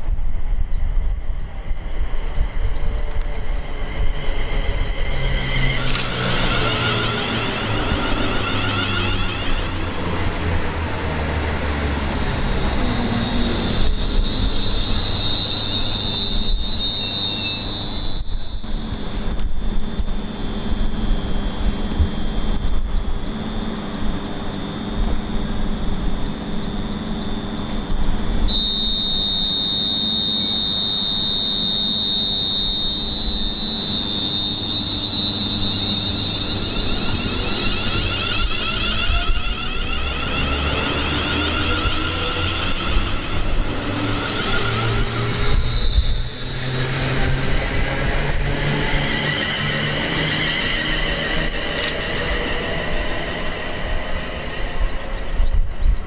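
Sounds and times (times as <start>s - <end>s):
high-pitched whine: 0.0s - 56.0s
train running past: 1.1s - 18.1s, 31.7s - 55.8s.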